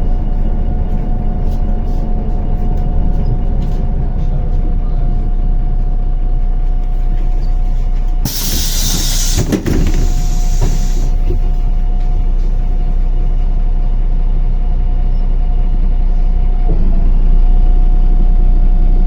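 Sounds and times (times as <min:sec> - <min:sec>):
bus engine rumbling with whine: 0:00.0 - 0:19.0
compressed air hiss: 0:08.2 - 0:11.3.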